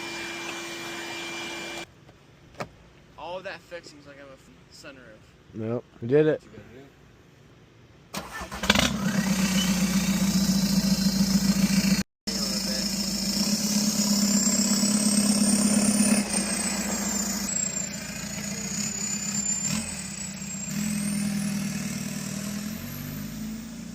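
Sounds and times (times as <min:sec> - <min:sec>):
diesel car engine running: 0:08.3 - 0:23.9
high rising whine: 0:09.2 - 0:23.9.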